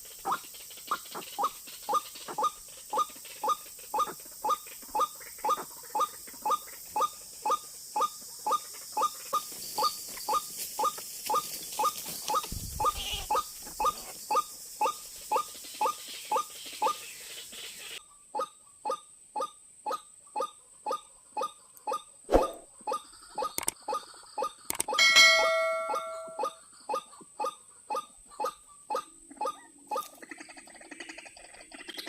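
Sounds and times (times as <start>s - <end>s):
waterhen calling: 0.2s - 18.5s, 22.3s - 27.2s.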